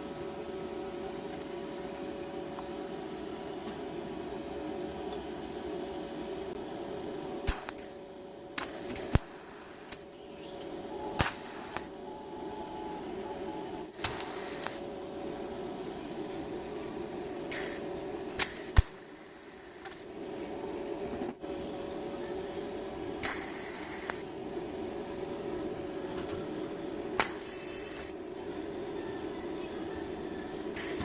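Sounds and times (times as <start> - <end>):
welding equipment hum: 0.0 - 28.9, 30.6 - 31.0
welding hiss: 7.4 - 8.0, 8.6 - 10.1, 11.2 - 11.9, 13.9 - 14.8, 17.5 - 20.1, 23.2 - 24.2, 27.2 - 28.2, 30.8 - 31.0.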